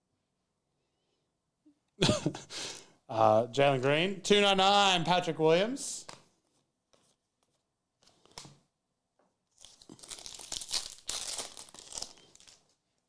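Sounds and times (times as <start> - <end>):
card pack wrapper tearing: 9.6 - 12.7
wrapper crinkling: 9.6 - 12.8.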